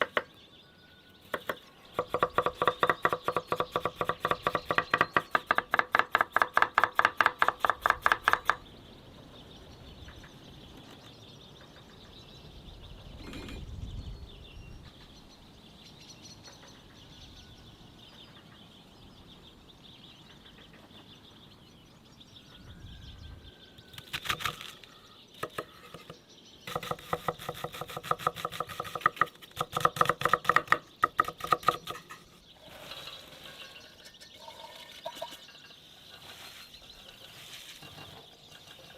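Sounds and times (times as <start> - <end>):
knife chopping on a board: 1.3 - 8.6, 26.7 - 32.0.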